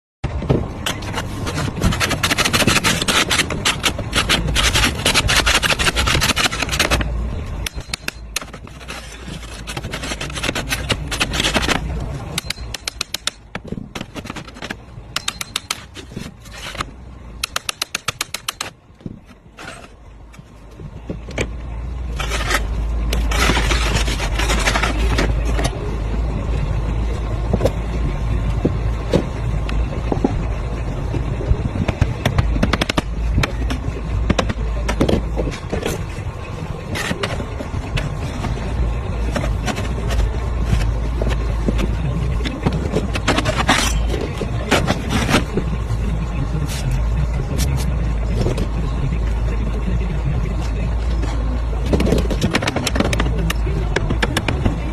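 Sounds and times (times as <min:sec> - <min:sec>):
metal scraping on slate: 0:00.8 - 0:20.0, 0:22.1 - 0:25.8, 0:36.9 - 0:45.7
rapid tool taps and knocks: 0:12.4 - 0:16.0, 0:17.4 - 0:19.2, 0:31.9 - 0:35.9.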